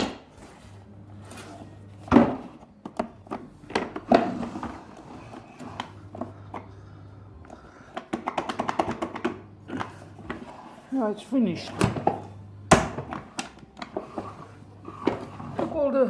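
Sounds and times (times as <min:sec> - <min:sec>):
knocks and clicks of handling: 0:07.9 - 0:10.4.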